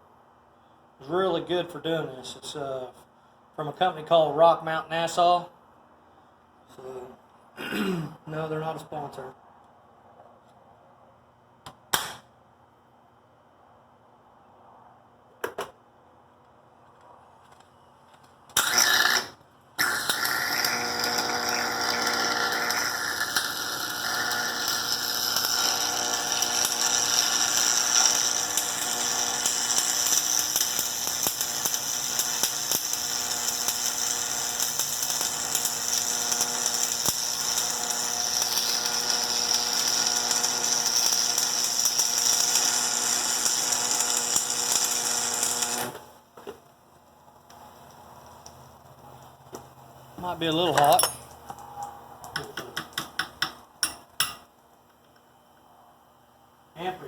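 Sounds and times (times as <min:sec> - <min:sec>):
welding arc crackling and hissing: 0:18.6 - 0:46.0.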